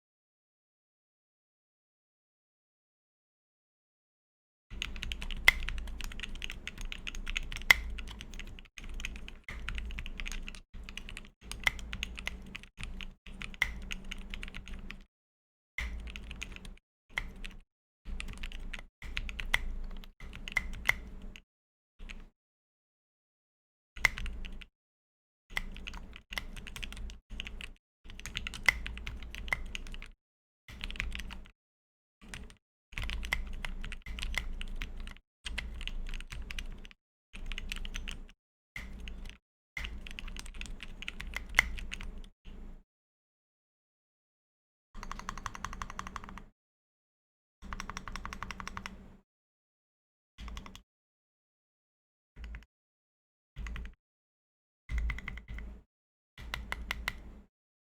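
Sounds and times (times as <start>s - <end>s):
typing on mechanical keyboard: 4.8s - 15.1s, 15.8s - 21.4s, 24.0s - 24.7s, 25.5s - 31.5s, 32.2s - 42.3s, 45.0s - 46.5s, 47.7s - 49.0s, 54.9s - 55.7s.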